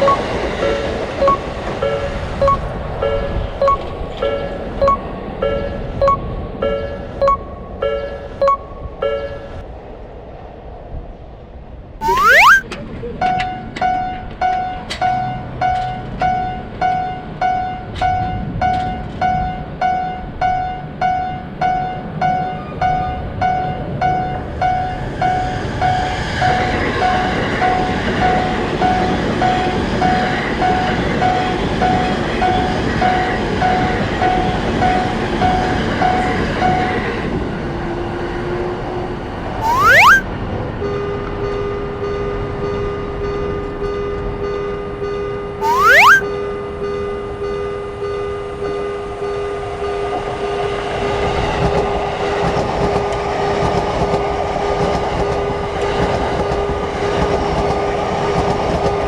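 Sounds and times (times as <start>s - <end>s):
rising whistle: 0.0s - 2.6s, 12.0s - 12.6s, 39.6s - 40.2s, 45.6s - 46.2s
level-crossing bell ringing: 0.0s - 9.6s
train passing: 0.0s - 11.7s.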